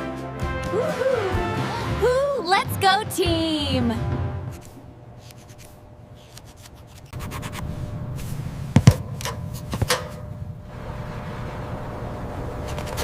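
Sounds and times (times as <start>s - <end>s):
rubbing and scuffing: 4.5s - 8.9s
steady low rumble: 7.2s - 12.9s
sharp knocks: 8.8s - 10.3s.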